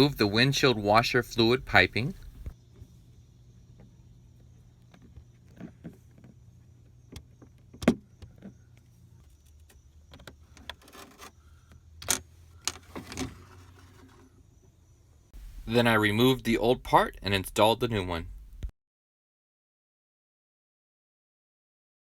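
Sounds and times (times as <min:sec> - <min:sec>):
low steady hum: 0:00.0 - 0:02.6, 0:15.4 - 0:18.7.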